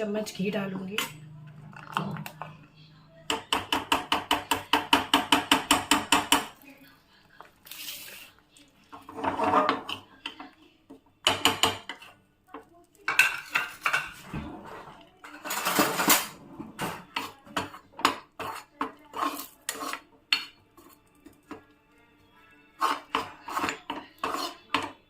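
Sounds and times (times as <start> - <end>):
metal spoon scraping a frying pan: 9.0 - 10.4, 11.3 - 12.2, 13.1 - 21.6, 22.7 - 25.0.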